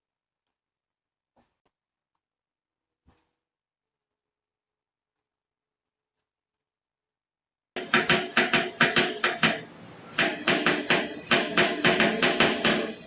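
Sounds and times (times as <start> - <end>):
fast sharp knocks: 7.8 - 13.0.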